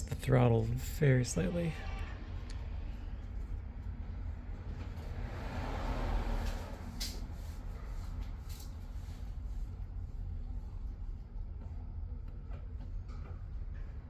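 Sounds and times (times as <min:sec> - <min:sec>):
car engine rumbling: 0:00.0 - 0:10.4.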